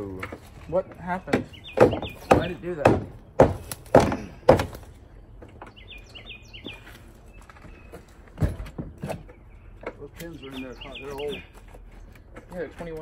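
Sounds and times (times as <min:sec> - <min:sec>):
small bird chirping: 0:00.7 - 0:02.6, 0:05.0 - 0:08.2, 0:09.0 - 0:12.3.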